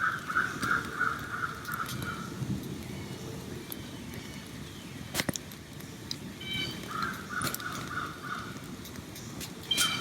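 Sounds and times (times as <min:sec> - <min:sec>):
bird calling: 0:00.0 - 0:02.3, 0:06.4 - 0:08.6, 0:09.7 - 0:10.0
low steady background rush: 0:00.0 - 0:10.0.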